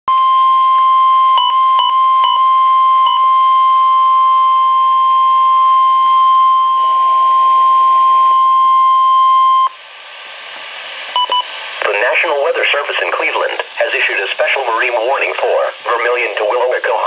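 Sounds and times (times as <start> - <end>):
loud steady alarm beep: 0.1 - 9.8, 11.1 - 11.6.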